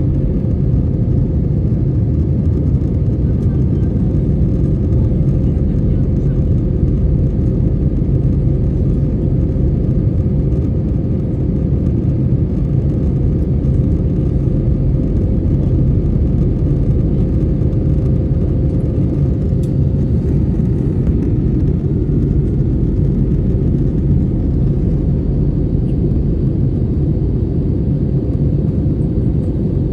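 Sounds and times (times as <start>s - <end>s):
jet engine cabin drone: 0.0s - 29.9s
steady hum: 0.0s - 29.9s.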